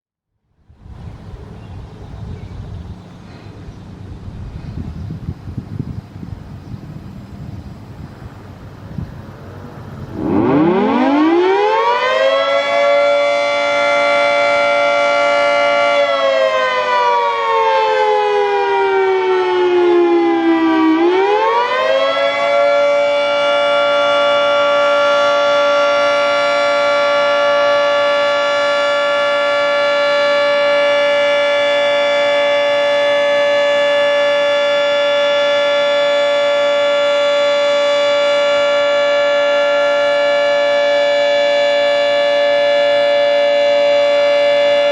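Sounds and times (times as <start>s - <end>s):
outdoor warning siren: 9.2s - 44.9s.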